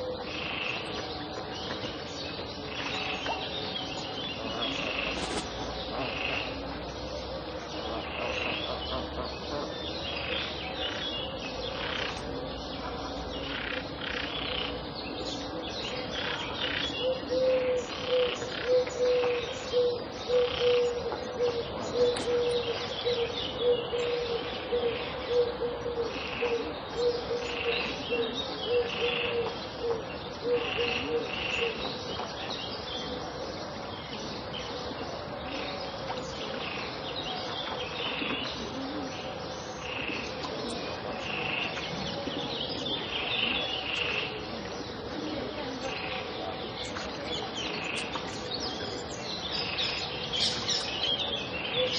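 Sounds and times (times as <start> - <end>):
low pulsing bird call: 2.6 - 31.8.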